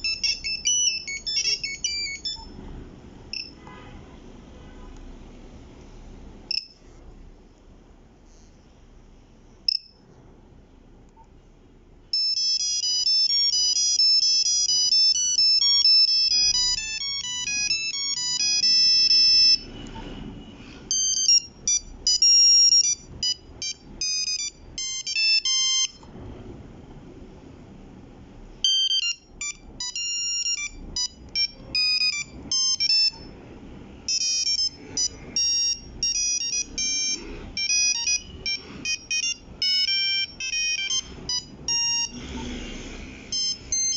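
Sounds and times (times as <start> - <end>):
beeping monophonic phone ringtones: 0.0 - 2.6, 12.1 - 19.7, 20.9 - 26.1, 28.6 - 33.3, 34.0 - 42.3, 43.3 - 43.9.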